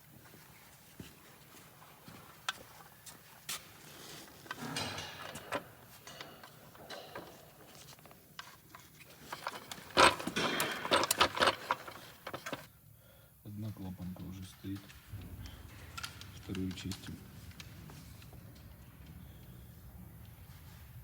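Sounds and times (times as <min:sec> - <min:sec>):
rustling clatter: 0:02.2 - 0:12.7, 0:14.1 - 0:21.0
engine parts clicking and tapping: 0:04.4 - 0:12.7.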